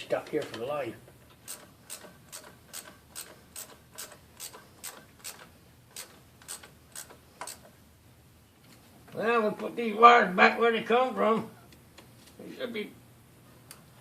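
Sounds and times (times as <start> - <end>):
ratchet wrench clicking: 1.4 - 7.7.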